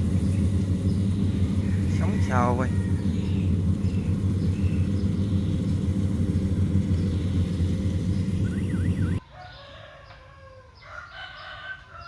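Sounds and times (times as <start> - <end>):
small engine droning: 0.0 - 9.2.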